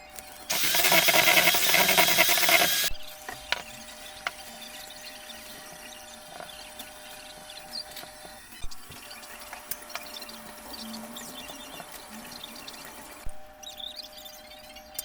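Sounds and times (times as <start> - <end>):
small electric motor whirring: 0.5 - 3.0.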